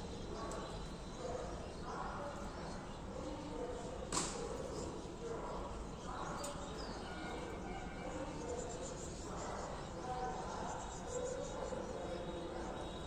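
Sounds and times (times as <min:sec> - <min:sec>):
outdoor background noise: 0:00.0 - 0:13.0.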